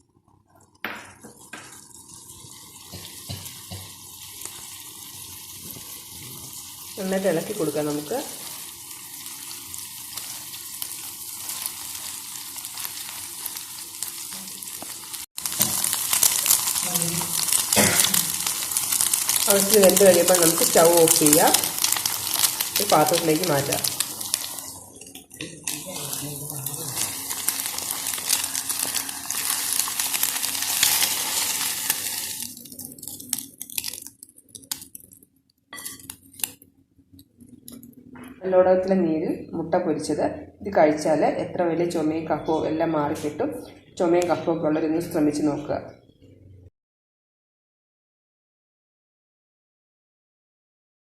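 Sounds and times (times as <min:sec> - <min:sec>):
food sizzling and crackling: 0:00.0 - 0:37.8
spoon clinking on dishes: 0:35.8 - 0:36.2
spoon scraping and stirring: 0:35.8 - 0:36.6.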